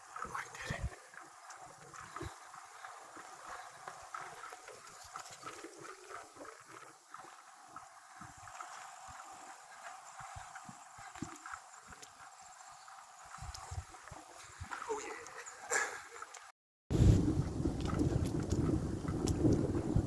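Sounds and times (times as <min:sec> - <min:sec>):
bicycle rattles and knocks: 0:17.0 - 0:20.0.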